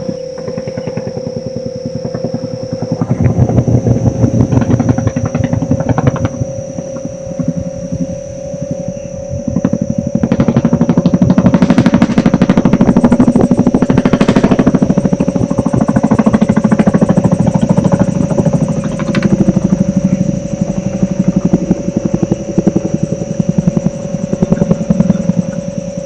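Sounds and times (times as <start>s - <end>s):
machine-like pulsing throb: 0.0s - 26.0s
steady hum: 0.0s - 26.0s.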